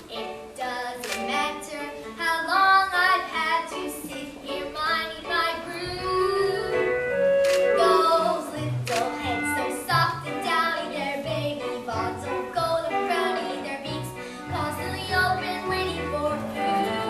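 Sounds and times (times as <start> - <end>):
instrumental accompaniment with bass: 5.6 - 17.0.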